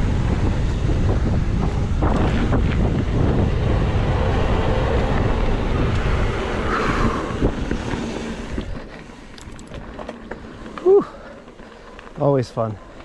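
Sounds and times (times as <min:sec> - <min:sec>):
wind rushing over microphone: 0:00.0 - 0:10.0
bike rattles: 0:00.0 - 0:13.0
tyres rolling on dirt: 0:00.4 - 0:13.0.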